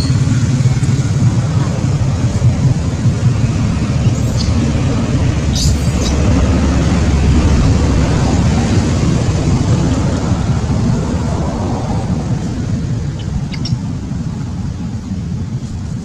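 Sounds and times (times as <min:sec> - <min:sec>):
low rumbling background noise: 0:00.0 - 0:16.0
high squeaks: 0:04.0 - 0:04.6.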